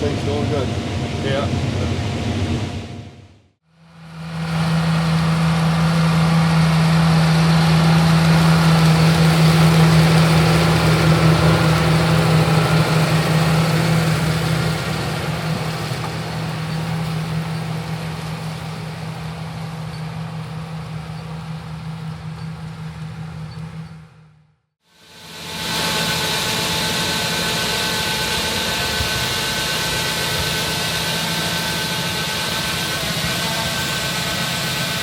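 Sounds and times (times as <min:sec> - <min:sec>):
combine diesel engine droning: 0:00.0 - 0:35.0.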